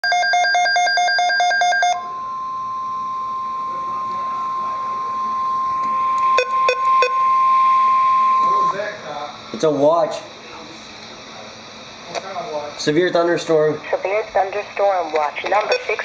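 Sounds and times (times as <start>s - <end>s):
steady alarm tone: 0.0s - 9.9s
rapid chirping data tones: 3.2s - 8.9s.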